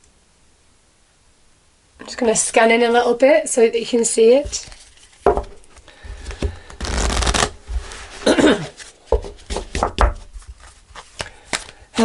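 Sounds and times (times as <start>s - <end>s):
cards shuffling: 4.4s - 11.8s.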